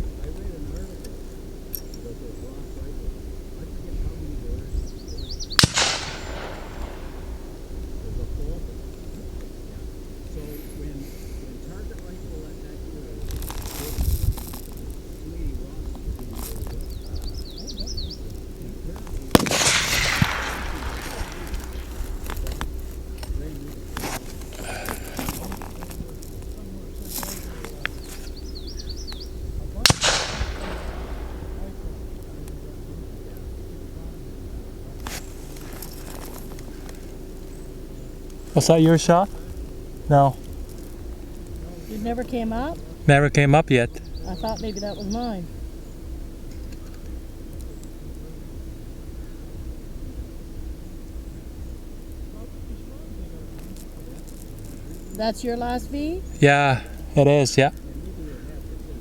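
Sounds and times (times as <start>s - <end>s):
rifle shot with echo: 5.5s - 7.7s, 19.0s - 24.0s, 29.8s - 32.3s.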